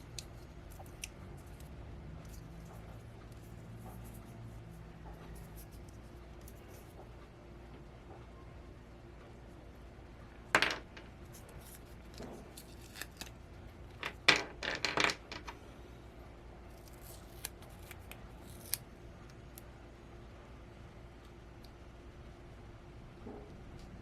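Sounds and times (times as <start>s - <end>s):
small parts scraping and snipping: 0.0s - 7.2s, 10.6s - 15.6s.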